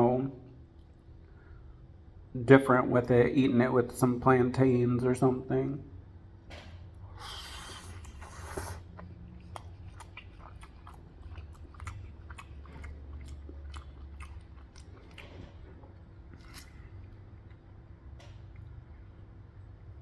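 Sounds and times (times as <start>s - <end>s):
steady low hum: 0.0s - 20.0s
man chewing food: 6.9s - 20.0s.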